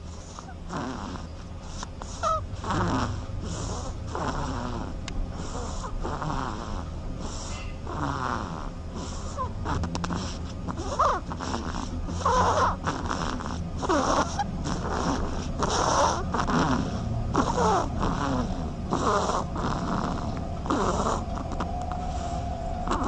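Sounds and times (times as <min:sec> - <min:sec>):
duckling snoring: 0:00.0 - 0:23.0.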